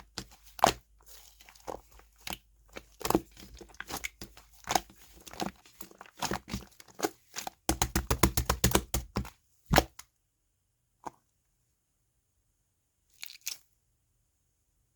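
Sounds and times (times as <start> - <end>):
slime squished by hand: 0.0 - 10.0.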